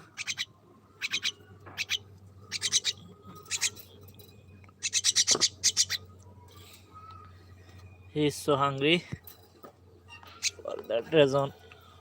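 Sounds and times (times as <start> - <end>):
bird raspy begging calls: 0.0 - 3.8, 4.8 - 6.1, 10.2 - 10.7.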